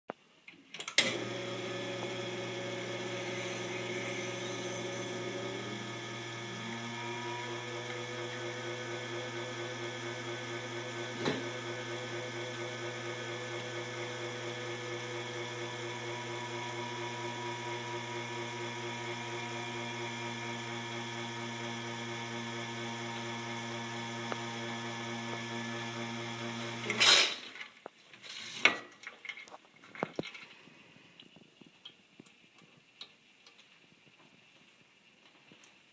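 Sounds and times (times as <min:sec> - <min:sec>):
espresso machine pump humming: 0:01.1 - 0:27.0.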